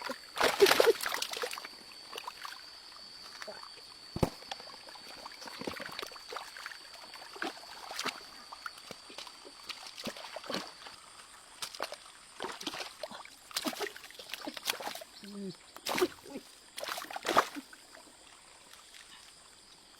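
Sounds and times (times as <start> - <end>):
water splashing and sloshing: 0.0 - 15.2, 15.8 - 19.6.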